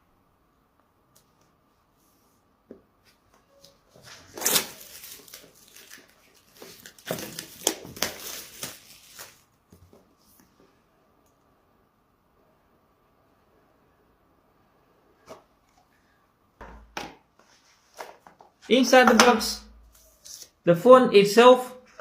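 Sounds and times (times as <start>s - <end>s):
packaging rustling and tearing: 4.0s - 9.6s.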